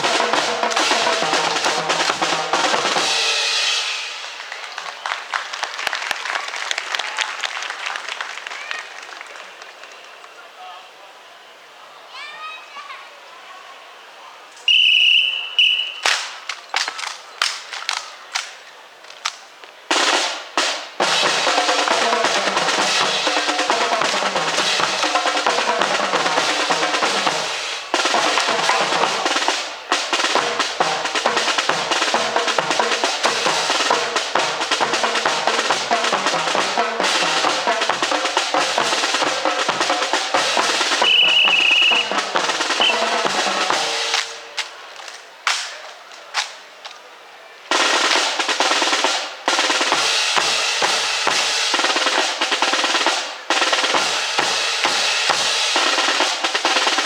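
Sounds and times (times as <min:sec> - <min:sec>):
snare drum rattle: 0:00.0 - 0:03.5, 0:19.2 - 0:44.8, 0:47.7 - 0:57.0
sharp drum strikes: 0:00.0 - 0:04.3, 0:19.9 - 0:44.5
high whistle-like tone: 0:14.7 - 0:16.1, 0:41.0 - 0:42.1, 0:42.8 - 0:43.1
bass drum beat: 0:30.0 - 0:44.2.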